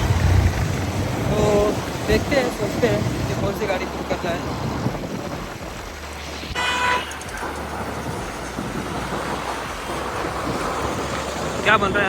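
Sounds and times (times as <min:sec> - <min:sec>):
traffic and road noise: 0:00.0 - 0:12.0
vehicle horn toot: 0:06.6 - 0:08.8.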